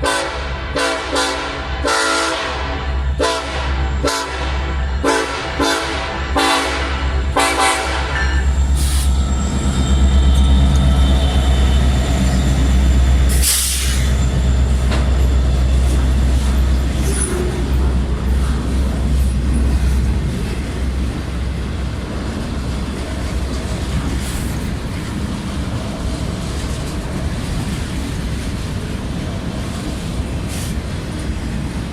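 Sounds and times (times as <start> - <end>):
locomotive horn blasts: 0.0 - 9.0
diesel locomotive rumbling: 0.0 - 31.9
freight cars rolling: 7.2 - 31.9.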